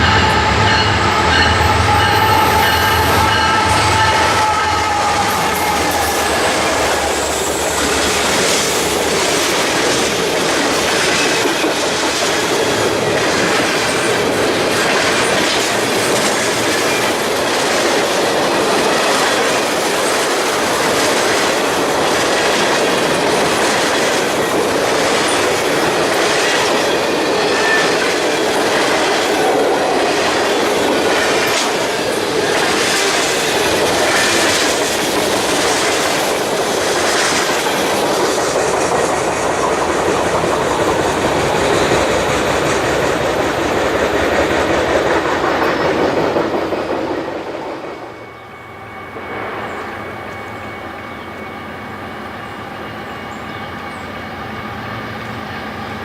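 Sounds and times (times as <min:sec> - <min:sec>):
railroad cars rolling past: 0:00.0 - 0:56.0
high wheel squeal: 0:47.9 - 0:55.9.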